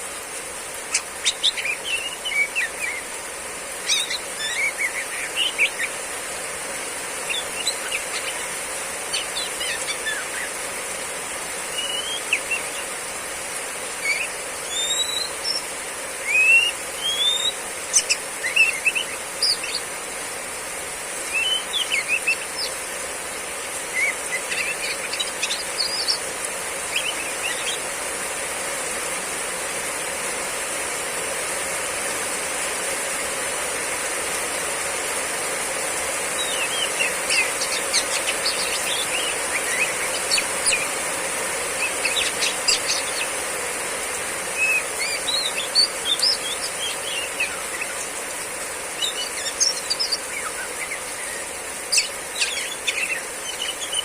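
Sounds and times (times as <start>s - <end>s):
heavy rain: 0.0s - 54.0s
bird chirping calls: 0.7s - 6.1s, 7.2s - 10.7s, 11.6s - 13.0s, 13.9s - 19.9s, 21.3s - 22.9s, 23.9s - 28.0s, 36.2s - 43.7s, 44.4s - 54.0s.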